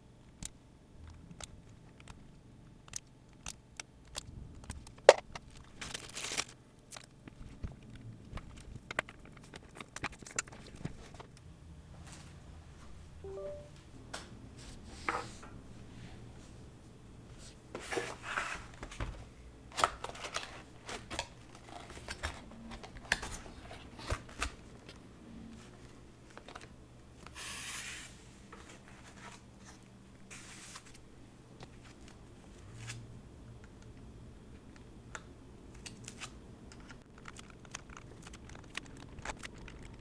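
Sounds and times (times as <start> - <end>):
packaging rustling: 5.4 - 6.6, 17.4 - 26.7.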